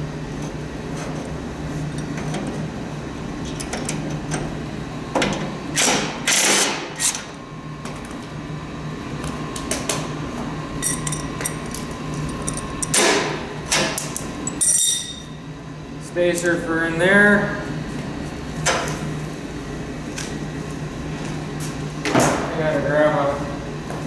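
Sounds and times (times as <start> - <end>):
steady low hum: 0.0 - 24.0
tools clicking and clinking: 10.8 - 13.1, 14.4 - 15.2.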